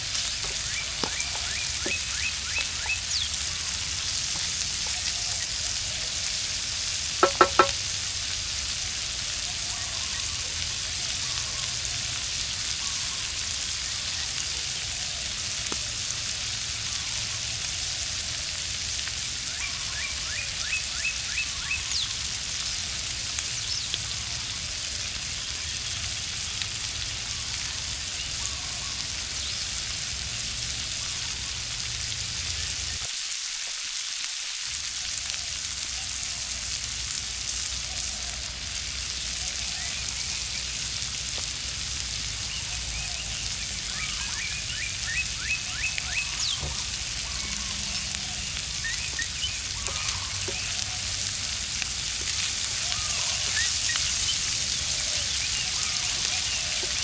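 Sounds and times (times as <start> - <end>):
food sizzling in a pan: 0.0 - 57.0
ringing knocks: 7.2 - 7.8.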